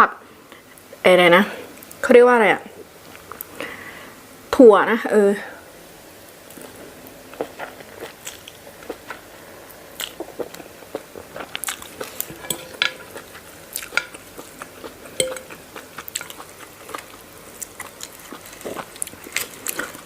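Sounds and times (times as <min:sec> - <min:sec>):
crunchy bites and chewing: 0:10.0 - 0:20.0
cutlery clinking on a plate: 0:12.3 - 0:13.2, 0:15.2 - 0:15.6.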